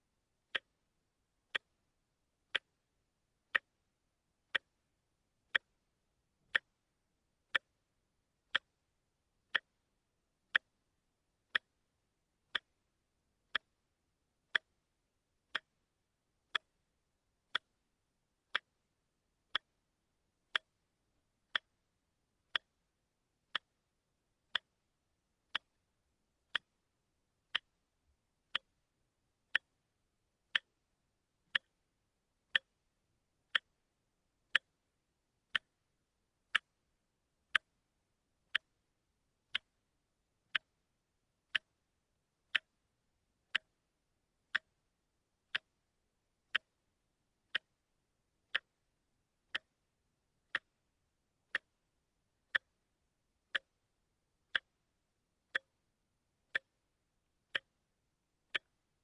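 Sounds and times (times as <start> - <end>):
watch ticking: 0.5 - 0.8, 1.5 - 1.8, 2.5 - 4.8, 5.5 - 5.8, 6.4 - 6.9, 7.5 - 8.9, 9.5 - 9.9, 10.5 - 10.8, 11.4 - 11.8, 12.4 - 12.9, 13.5 - 18.9, 19.5 - 21.8, 22.5 - 22.9, 23.5 - 23.9, 24.5 - 24.9, 25.5 - 26.9, 27.5 - 27.9, 28.5 - 28.9, 29.5 - 29.9, 30.5 - 30.9, 31.5 - 31.8, 32.4 - 32.9, 33.5 - 34.9, 35.5 - 38.9, 39.5 - 40.9, 41.5 - 43.8, 44.5 - 46.8, 47.5 - 47.9, 48.5 - 48.9, 49.5 - 49.8, 50.4 - 51.9, 52.5 - 52.9, 53.5 - 53.9, 54.5 - 55.8, 56.4 - 56.8, 57.5 - 58.8.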